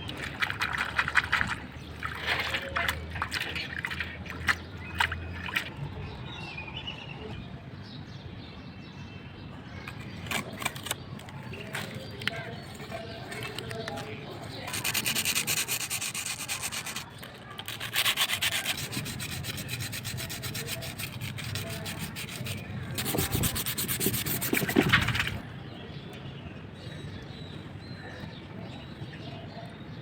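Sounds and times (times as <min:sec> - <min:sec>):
faint handling sounds: 0:09.8 - 0:25.4
abrasive rubbing on rusty metal: 0:14.5 - 0:25.4.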